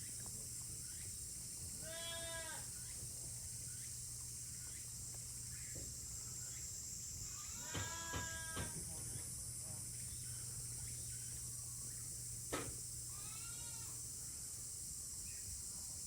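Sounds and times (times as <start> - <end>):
goat kid bleating: 1.8 - 2.7, 7.4 - 8.7, 13.1 - 14.0.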